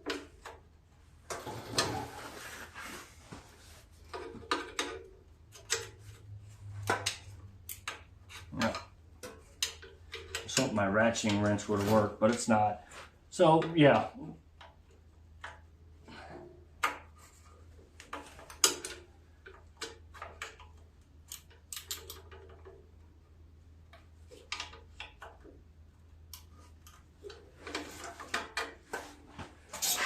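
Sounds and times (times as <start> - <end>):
wrench clicking on a bolt: 21.3 - 22.2.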